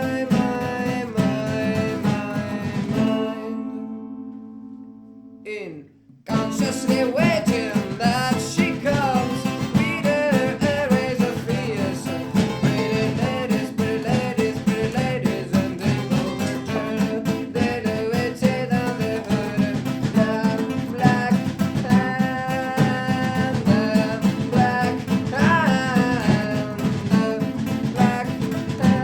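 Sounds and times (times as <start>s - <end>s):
guitars strummed: 0.0s - 29.0s
bass and percussion: 6.3s - 29.0s.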